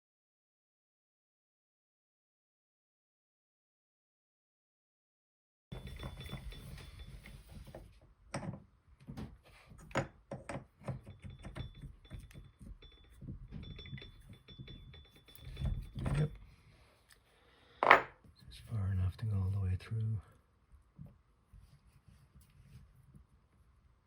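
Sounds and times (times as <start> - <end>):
metallic knocks and clicks: 9.8 - 16.4.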